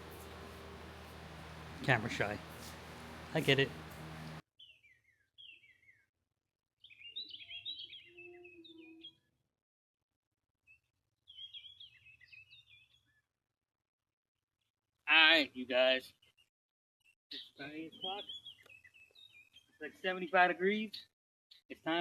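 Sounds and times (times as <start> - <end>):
songbirds singing faintly: 0.0 - 6.1, 6.8 - 9.4, 10.7 - 13.3, 17.1 - 20.5.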